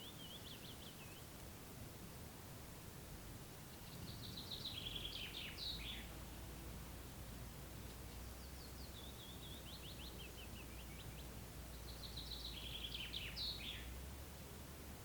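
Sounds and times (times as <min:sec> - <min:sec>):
songbird singing: 0:00.0 - 0:01.4, 0:03.6 - 0:06.5, 0:07.8 - 0:14.6
low outdoor background hum: 0:00.0 - 0:15.0.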